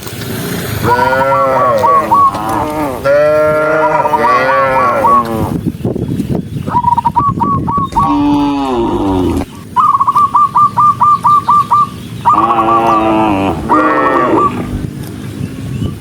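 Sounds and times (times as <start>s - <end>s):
cattle mooing: 0.8s - 5.6s, 8.0s - 9.5s, 12.3s - 14.7s
bird chirping: 0.9s - 3.0s, 3.6s - 16.0s.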